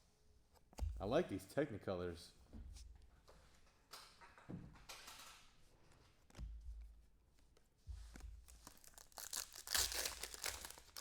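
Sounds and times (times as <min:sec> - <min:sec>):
wrapper crinkling and tearing: 0:08.5 - 0:11.0.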